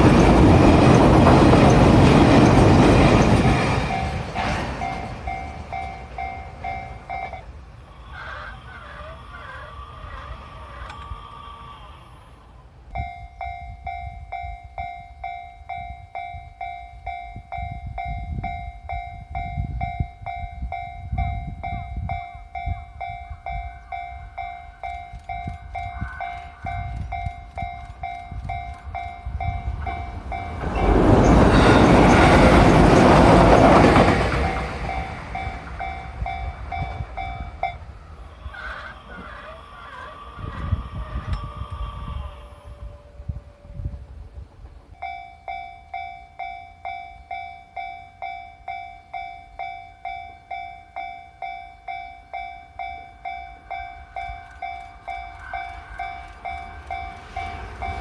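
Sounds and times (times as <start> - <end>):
level-crossing warning bell: 0.0 - 7.8, 12.9 - 39.2, 41.2 - 58.0
train rumbling past: 0.0 - 58.0.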